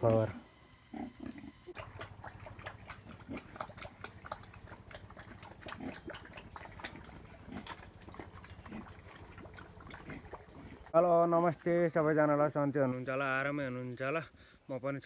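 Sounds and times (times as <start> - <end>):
pigs grunting: 0.9 - 11.0.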